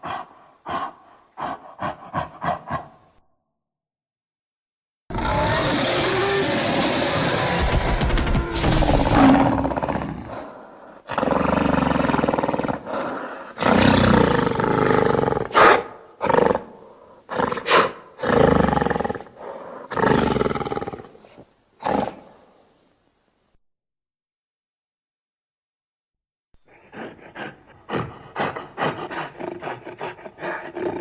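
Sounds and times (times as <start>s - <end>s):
giant ape roaring: 5.1s - 15.6s.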